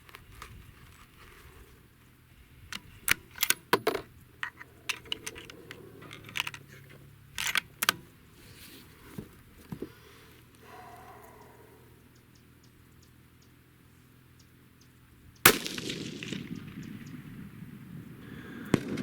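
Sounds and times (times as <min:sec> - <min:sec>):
small gear clicking and rattling: 0:02.7 - 0:08.2.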